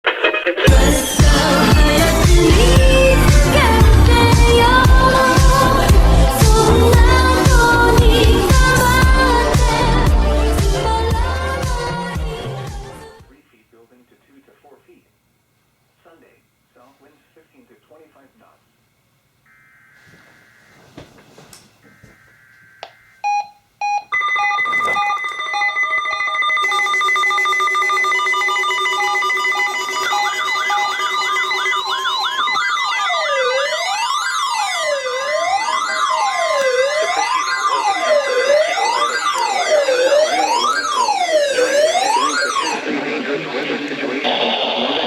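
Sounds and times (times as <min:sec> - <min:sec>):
siren wails sweeping: 0:00.7 - 0:10.9, 0:19.5 - 0:23.5, 0:24.2 - 0:45.0
steady electronic alert tones: 0:00.7 - 0:10.9, 0:19.5 - 0:21.0, 0:21.8 - 0:45.0
short electronic beeps: 0:22.2 - 0:32.8.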